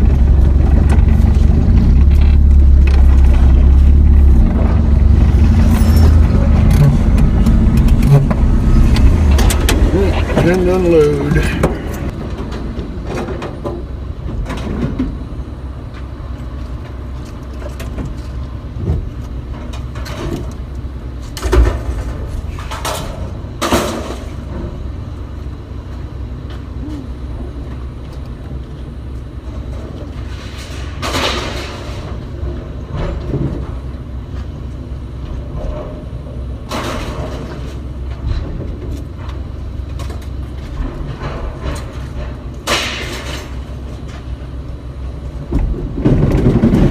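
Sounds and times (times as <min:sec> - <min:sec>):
steady low rumble: 0:00.0 - 0:46.9
metal scrape: 0:05.2 - 0:10.4
scrap metal bangs and clanks: 0:21.4 - 0:25.0, 0:29.6 - 0:33.9, 0:35.4 - 0:39.3, 0:40.0 - 0:44.2.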